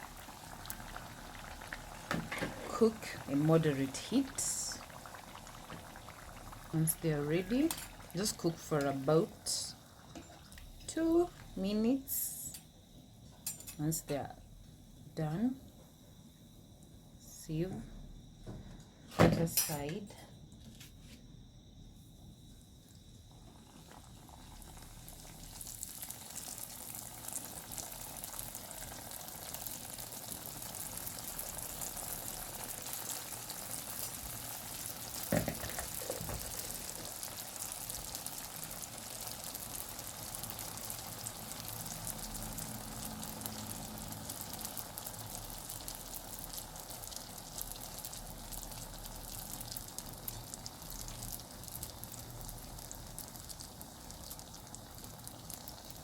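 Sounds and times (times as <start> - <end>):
doughnuts sizzling in hot oil: 0.0 - 12.8, 22.0 - 56.0.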